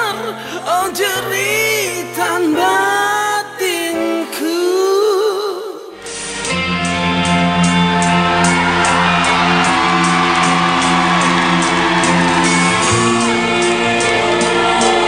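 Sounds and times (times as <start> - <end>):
electric guitar chords: 5.9 - 15.0
lead guitar bending pitch: 6.0 - 15.0.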